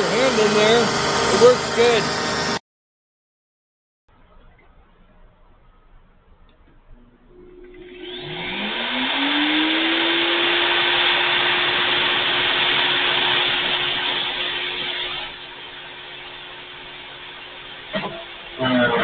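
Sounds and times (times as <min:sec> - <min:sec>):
wood chipper motor whirring: 0:00.0 - 0:02.6, 0:06.9 - 0:19.0.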